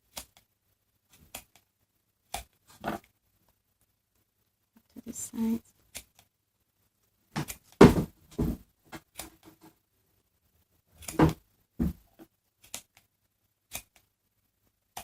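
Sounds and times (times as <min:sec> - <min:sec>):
knocks and rustles of handling: 0:07.3 - 0:09.8, 0:11.0 - 0:12.4.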